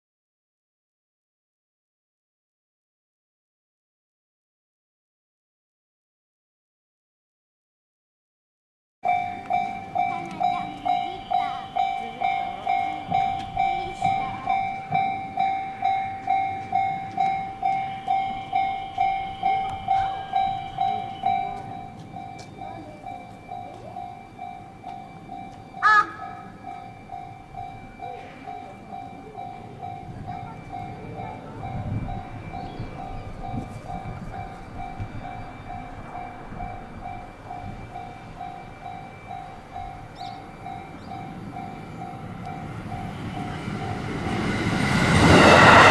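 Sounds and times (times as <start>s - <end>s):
level crossing alarm clanging: 9.1s - 45.9s
passing train rumble: 9.1s - 45.9s
train horn toot: 25.8s - 26.5s.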